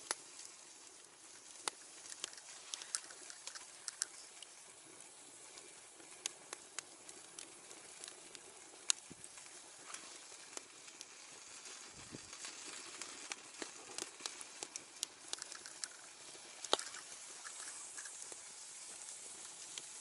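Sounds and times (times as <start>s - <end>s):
campfire crackling and popping: 0.0s - 20.0s.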